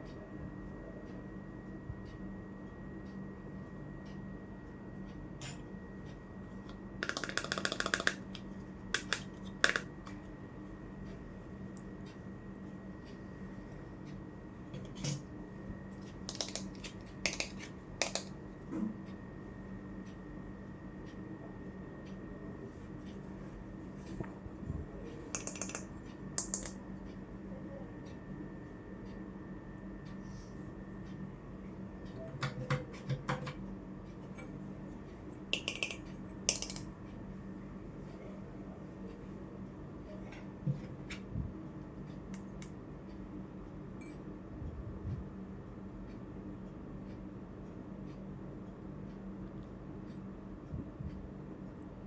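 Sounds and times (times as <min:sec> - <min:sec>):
hard toy pieces clicking: 0:07.0 - 0:08.2, 0:35.6 - 0:36.8
toy kitchen pieces clicking: 0:16.3 - 0:16.7, 0:17.3 - 0:18.3, 0:25.4 - 0:25.8, 0:35.6 - 0:36.8.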